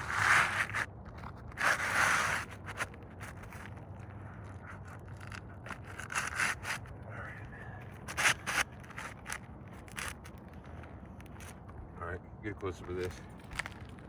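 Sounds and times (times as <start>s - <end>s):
asphalt shingles scraping and crackling: 0.0s - 14.0s.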